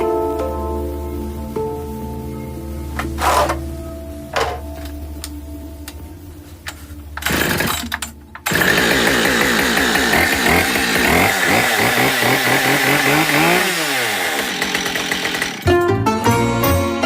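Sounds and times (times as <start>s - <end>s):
chainsaw running: 7.2s - 15.8s.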